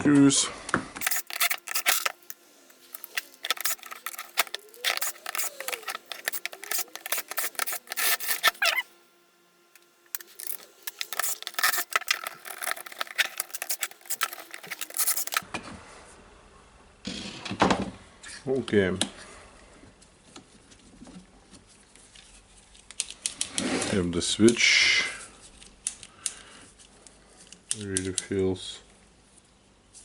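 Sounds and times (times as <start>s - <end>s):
screwdriver clicking and scraping: 1.0s - 8.8s, 9.8s - 15.4s.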